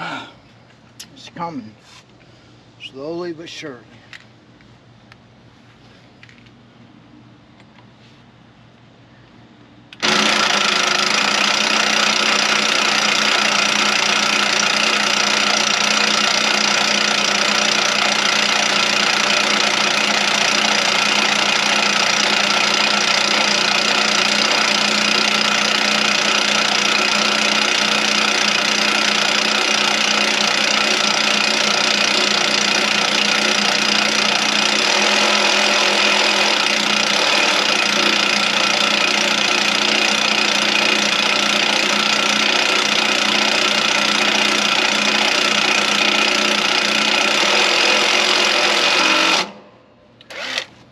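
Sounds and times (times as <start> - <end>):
motor running steadily: 9.9 - 49.6.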